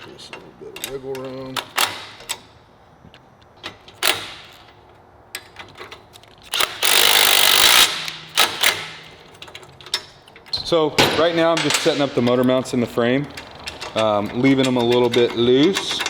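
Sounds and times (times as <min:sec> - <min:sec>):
metal clinks and knocks: 0:08.2 - 0:16.0.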